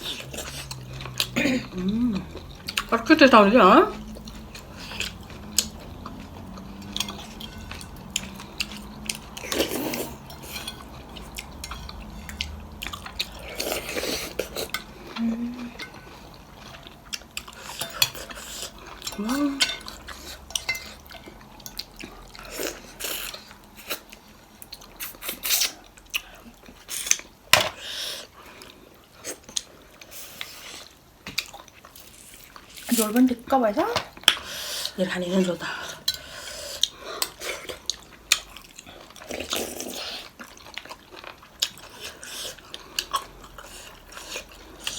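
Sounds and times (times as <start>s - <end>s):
cutlery clinking on dishes: 6.7s - 13.0s, 17.7s - 18.4s, 19.1s - 21.4s, 27.5s - 27.8s.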